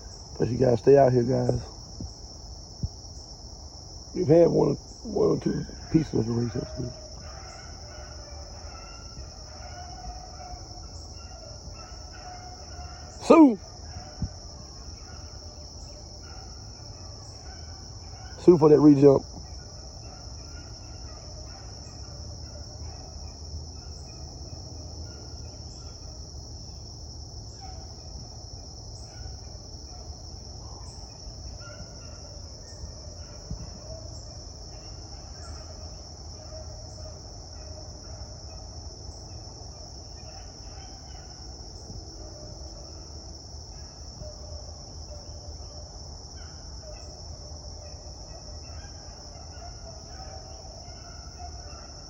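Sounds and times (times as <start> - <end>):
insect chorus trilling: 0.0 - 52.0
faint short calls: 12.3 - 14.4, 18.3 - 19.4.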